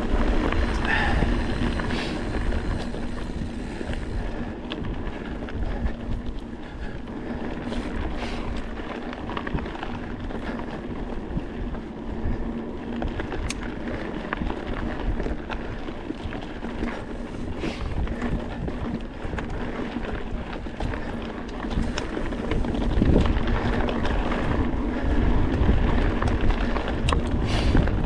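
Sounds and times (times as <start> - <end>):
faint hum: 0.0 - 18.8
bike clicks and rattles: 0.0 - 28.0
bike rolling on dirt trail: 0.0 - 28.0
wind buffeting microphone: 0.0 - 28.0.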